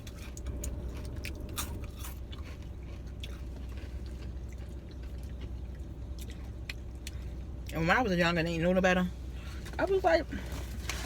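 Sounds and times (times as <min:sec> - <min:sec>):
chewing crunches: 0:00.0 - 0:07.8
steady low hum: 0:00.0 - 0:11.0.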